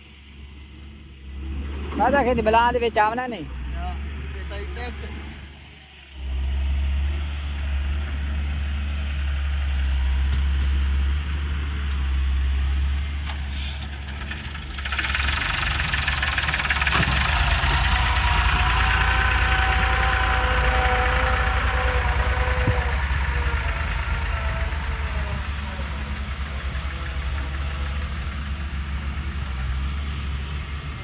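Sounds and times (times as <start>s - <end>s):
diesel engine rumbling: 0.0s - 31.0s
hiss: 4.5s - 8.6s
high whine: 16.8s - 29.2s.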